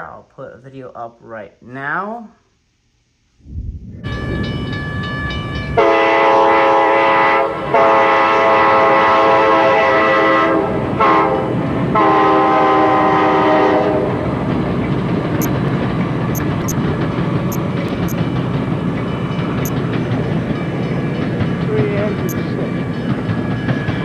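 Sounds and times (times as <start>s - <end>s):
passing train running noise: 3.8s - 24.0s
locomotive air horn blasts: 5.8s - 14.2s.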